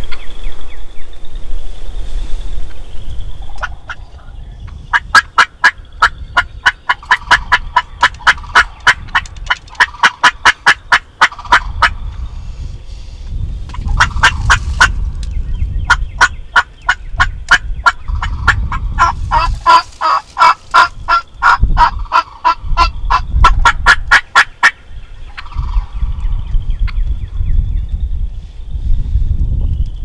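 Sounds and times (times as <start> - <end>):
wind rumbling on microphone: 0.0 - 30.0
turkey yelping: 9.8 - 12.0, 13.8 - 14.9, 15.9 - 24.8.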